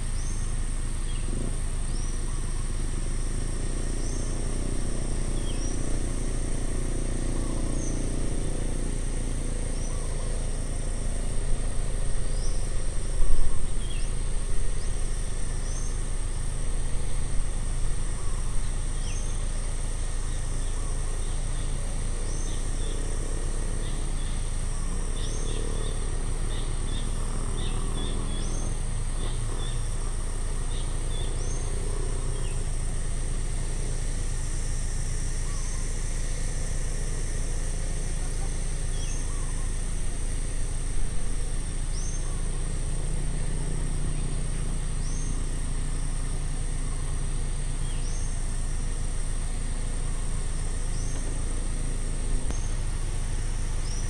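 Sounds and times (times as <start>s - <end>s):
high insect-like drone: 0.0s - 54.0s
birds chirping: 37.8s - 54.0s.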